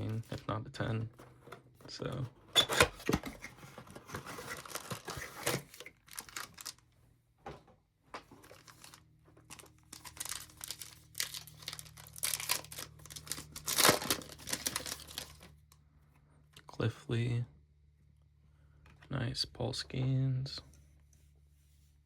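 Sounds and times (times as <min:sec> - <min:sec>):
wrapper crinkling and tearing: 0:04.1 - 0:06.8, 0:08.4 - 0:15.6.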